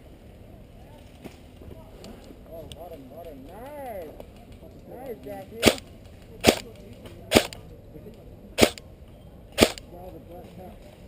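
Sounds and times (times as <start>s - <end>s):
airsoft rifle shots: 5.6s - 6.7s, 7.3s - 7.6s, 8.6s - 8.8s, 9.6s - 9.9s.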